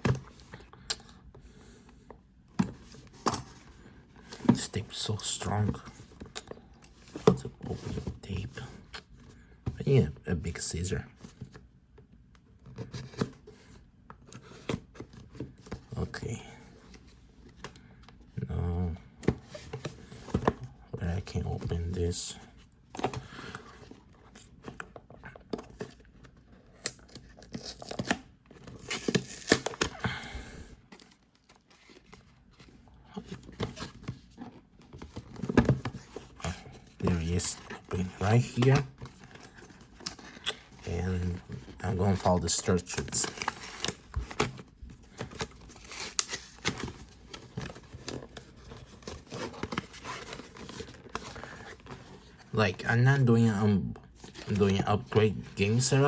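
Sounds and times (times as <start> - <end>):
cardboard rustling and crinkling: 2.5 - 10.0, 12.5 - 56.0
packing tape tearing: 26.7 - 30.0
paper packaging crinkling: 30.9 - 52.4.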